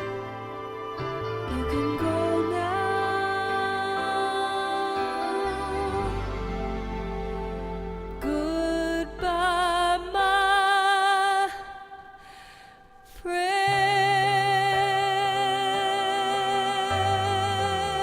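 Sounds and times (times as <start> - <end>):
soft musical backing: 0.0 - 18.0
wordless singing with vibrato: 0.0 - 18.0.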